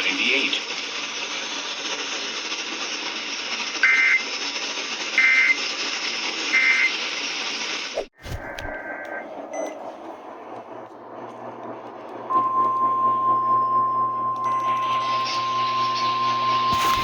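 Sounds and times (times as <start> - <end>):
radio static: 0.0 - 3.0, 3.6 - 4.5, 8.0 - 12.3, 14.6 - 17.0
low hum: 8.2 - 17.0.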